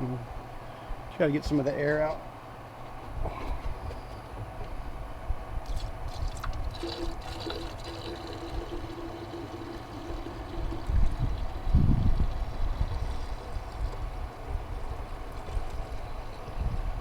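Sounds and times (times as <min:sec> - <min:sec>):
water pouring into reservoir: 0:05.7 - 0:17.0.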